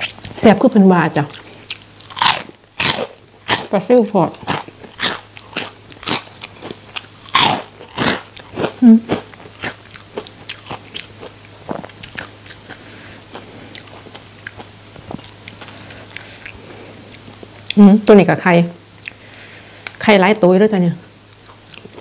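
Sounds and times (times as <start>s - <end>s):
crunchy chewing of fried fish: 1.2s - 17.8s, 21.2s - 22.0s.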